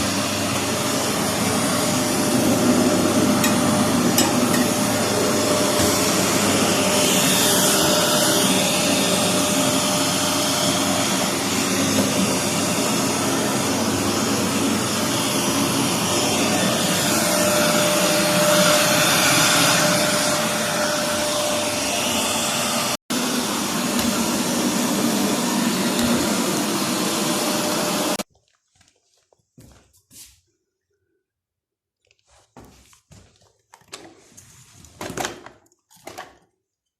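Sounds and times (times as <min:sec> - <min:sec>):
vacuum cleaner running: 0:00.0 - 0:28.3.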